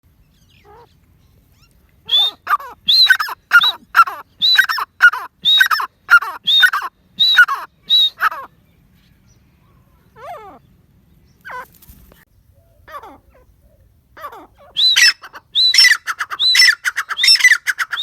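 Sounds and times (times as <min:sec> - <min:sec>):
francolin calling: 0:00.2 - 0:08.6, 0:11.4 - 0:11.7, 0:12.5 - 0:18.0.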